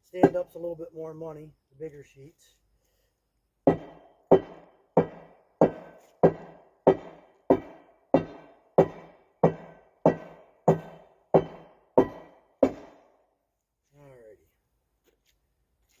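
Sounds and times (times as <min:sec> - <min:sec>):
steel striking stone slab: 0:03.7 - 0:13.0.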